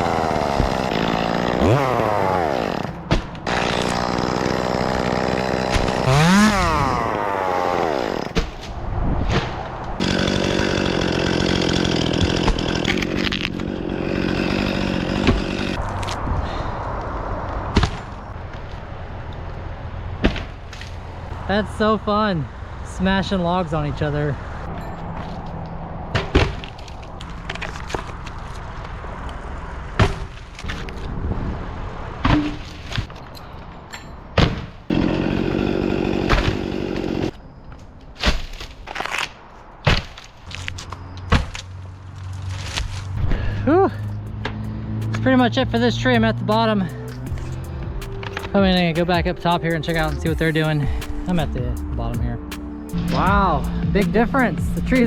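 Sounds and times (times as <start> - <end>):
engine-like buzz: 0.0 - 8.5, 9.4 - 21.5, 41.8 - 55.0
chainsaw cutting wood: 0.0 - 8.6, 10.0 - 15.8, 34.4 - 37.4, 43.4 - 51.4.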